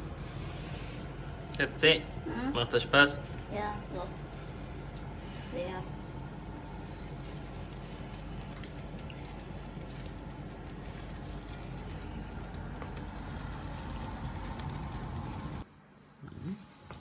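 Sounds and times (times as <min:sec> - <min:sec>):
pancakes sizzling in a pan: 0:07.0 - 0:15.6.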